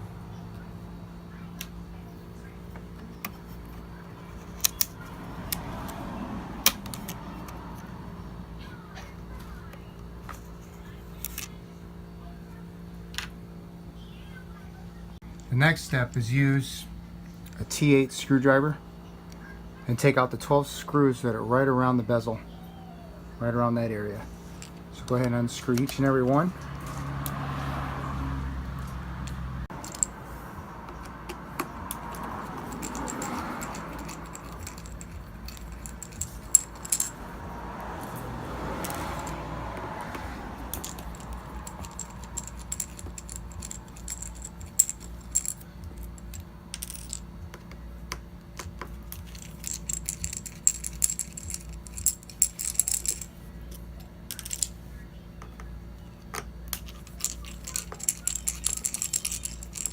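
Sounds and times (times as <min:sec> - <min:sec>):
small screws clinking: 0:04.3 - 0:06.0, 0:06.6 - 0:07.9, 0:24.4 - 0:27.4, 0:28.8 - 0:47.8, 0:48.6 - 0:54.8, 0:56.3 - 0:59.9.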